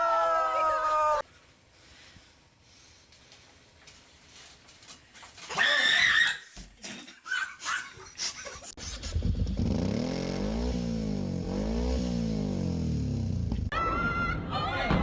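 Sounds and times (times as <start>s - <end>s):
engine revving: 9.2s - 13.7s.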